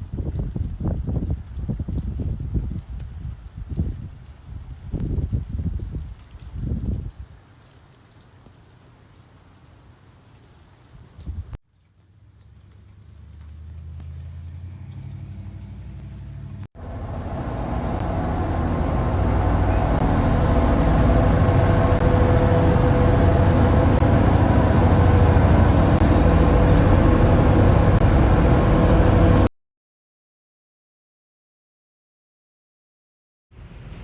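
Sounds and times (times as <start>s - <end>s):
motor vehicle engine running: 12.1s - 29.5s.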